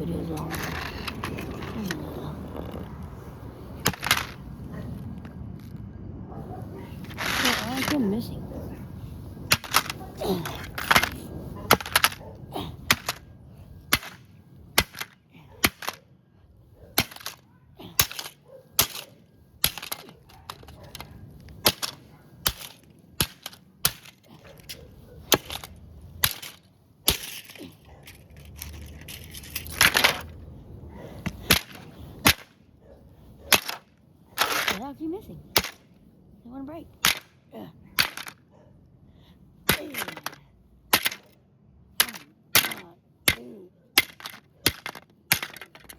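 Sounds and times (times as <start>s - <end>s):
hammer striking ground: 3.8s - 4.5s, 9.4s - 16.0s, 17.0s - 30.4s, 31.2s - 32.6s, 33.4s - 34.8s, 35.5s - 35.9s, 37.0s - 37.4s, 38.0s - 38.4s, 39.6s - 45.9s
hammer cracking on plastic: 9.5s - 10.0s, 12.9s - 13.2s, 13.9s - 16.0s, 17.0s - 17.4s, 18.0s - 21.0s, 21.6s - 24.7s, 31.5s - 32.5s, 33.5s - 33.8s, 35.6s - 35.8s, 37.0s - 37.4s, 44.0s - 45.9s.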